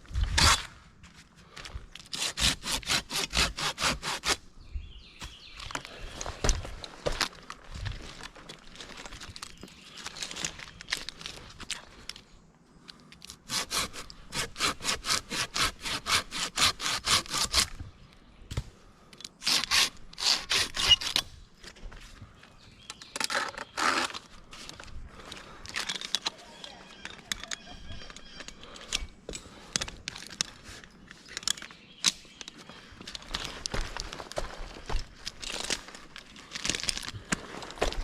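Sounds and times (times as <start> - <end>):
hand saw cutting wood: 0.3 - 0.7, 2.0 - 4.4, 13.3 - 17.8, 19.4 - 21.3, 23.2 - 24.3.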